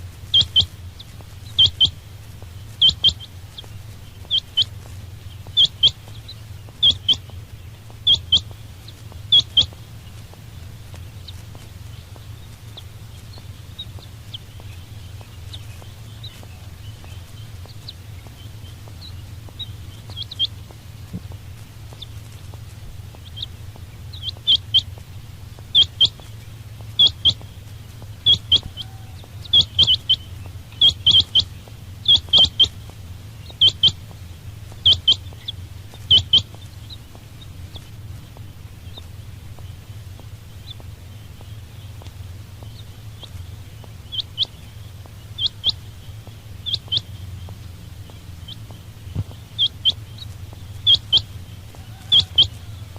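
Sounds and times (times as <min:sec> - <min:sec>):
quail calling: 0:00.0 - 0:52.9.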